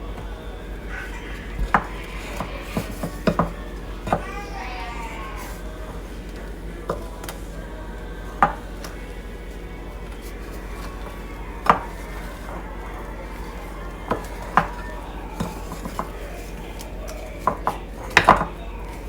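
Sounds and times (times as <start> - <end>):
steady low hum: 0.0 - 19.0
utensils knocking against a bowl: 0.1 - 19.0.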